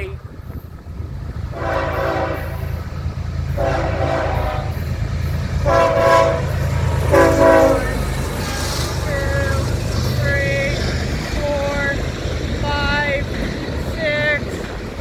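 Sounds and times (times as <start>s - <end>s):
train rumbling: 0.0s - 15.0s
locomotive air horn blasts: 1.5s - 2.8s, 3.5s - 4.9s, 5.6s - 8.8s.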